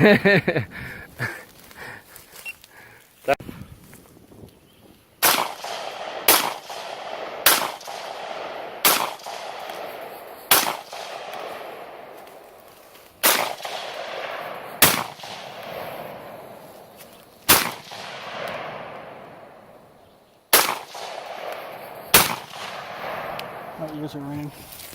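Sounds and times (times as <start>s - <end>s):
rifle shots echoing: 5.2s - 24.3s.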